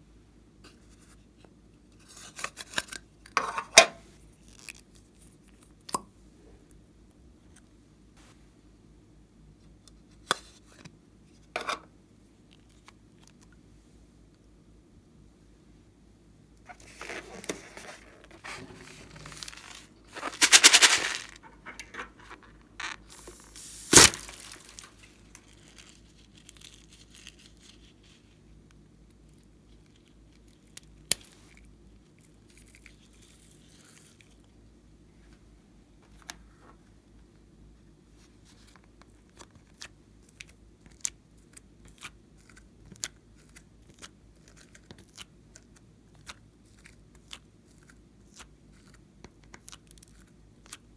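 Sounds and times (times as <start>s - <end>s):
crackling tearing burst: 16.7s - 21.4s, 23.1s - 27.5s.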